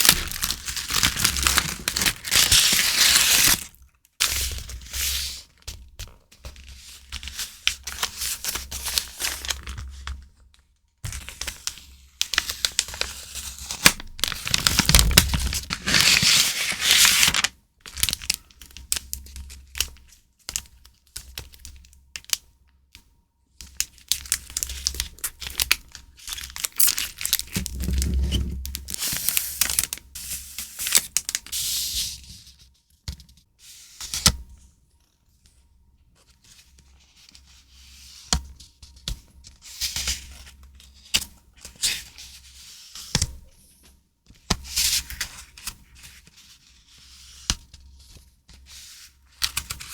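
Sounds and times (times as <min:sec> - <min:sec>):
packaging crinkling and tearing: 0:00.0 - 0:03.8, 0:12.4 - 0:18.4, 0:24.1 - 0:30.0.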